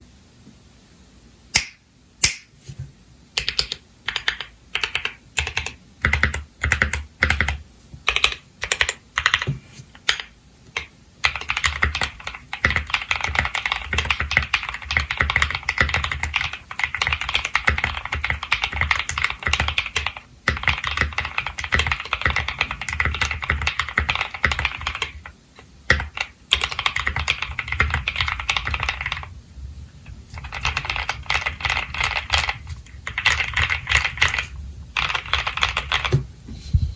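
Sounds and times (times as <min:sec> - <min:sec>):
mechanical keyboard typing: 0:03.4 - 0:25.3, 0:25.9 - 0:29.3, 0:30.3 - 0:36.2.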